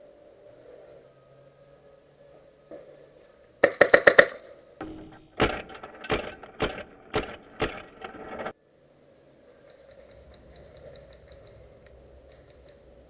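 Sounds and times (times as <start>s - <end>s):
airsoft gun full-auto burst: 3.6s - 4.6s
muffled airsoft gun bursts: 3.6s - 4.6s.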